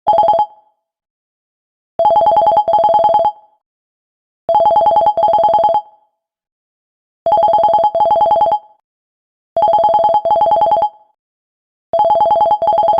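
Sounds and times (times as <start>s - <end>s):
electronic phone ringtone trill: 2.0s - 3.4s, 7.3s - 8.6s, 9.6s - 11.0s, 12.0s - 12.9s.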